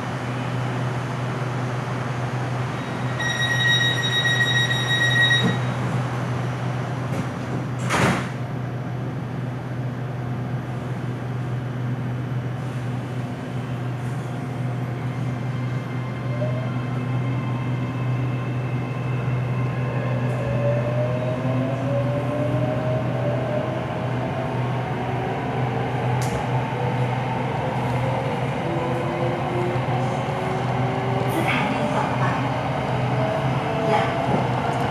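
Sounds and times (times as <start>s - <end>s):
train low hum: 0.0s - 34.9s.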